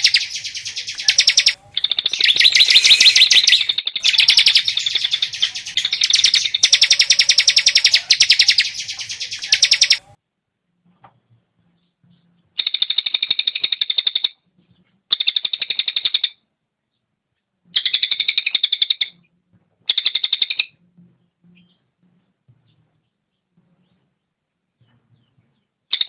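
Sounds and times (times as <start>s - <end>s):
songbird chattering trills: 0.0s - 10.0s.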